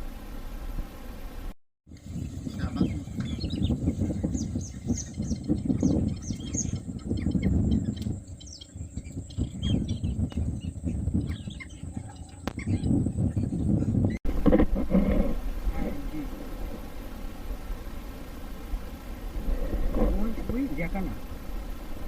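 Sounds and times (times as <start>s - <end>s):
birds chirping: 2.0s - 14.3s
low uneven rumble: 14.3s - 22.0s.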